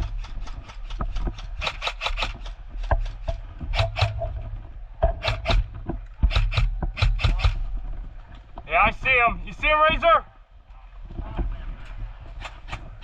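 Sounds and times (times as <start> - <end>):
airsoft rifle shots: 1.6 - 2.5, 3.7 - 4.2, 5.2 - 7.7.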